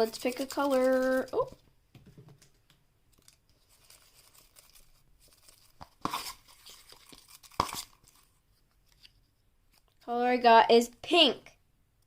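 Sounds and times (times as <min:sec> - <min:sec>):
paper slip rustling and crinkling: 0:00.0 - 0:01.6, 0:03.1 - 0:10.0.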